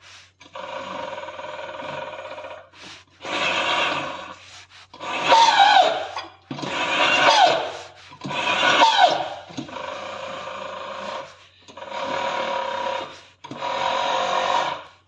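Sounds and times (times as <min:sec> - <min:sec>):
falling squeals: 0:05.2 - 0:09.6.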